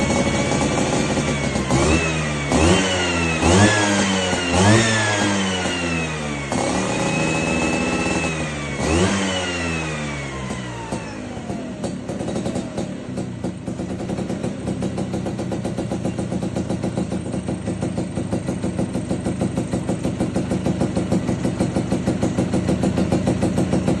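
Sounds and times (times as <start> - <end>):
scooter engine idling: 0.0 - 24.0.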